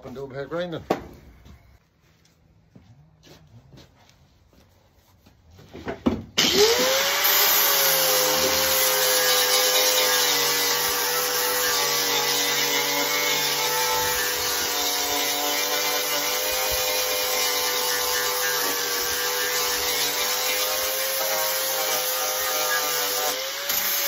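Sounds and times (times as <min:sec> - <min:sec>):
power grinder grinding: 0:06.4 - 0:24.0.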